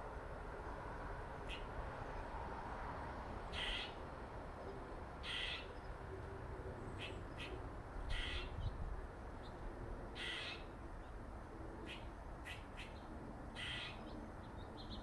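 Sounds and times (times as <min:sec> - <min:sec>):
squirrel raspy calls: 0:03.6 - 0:04.0, 0:05.2 - 0:05.6, 0:10.2 - 0:10.6, 0:13.6 - 0:14.0.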